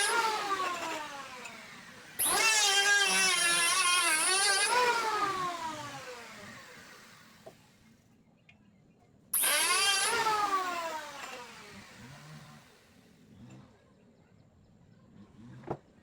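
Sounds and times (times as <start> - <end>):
motor whine winding down: 0.0 - 7.6, 9.4 - 13.5
power tool cutting hiss: 0.0 - 7.6, 9.4 - 12.8.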